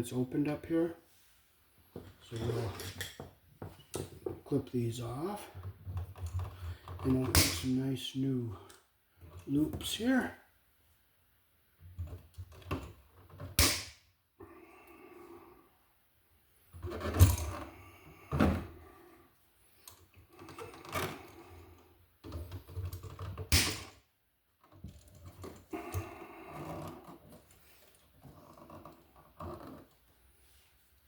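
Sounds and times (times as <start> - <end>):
scraping and handling noise: 1.8 - 4.7, 16.7 - 19.1, 24.6 - 31.0.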